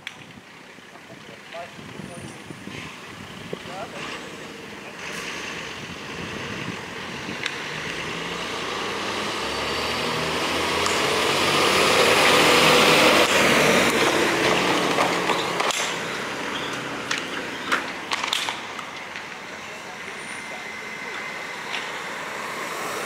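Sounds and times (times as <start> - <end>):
vehicle driving past: 3.9 - 17.8, 19.6 - 23.0.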